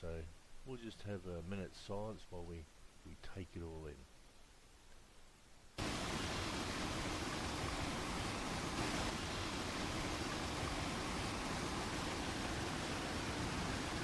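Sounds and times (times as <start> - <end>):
small waterfall rushing: 5.8 - 14.0.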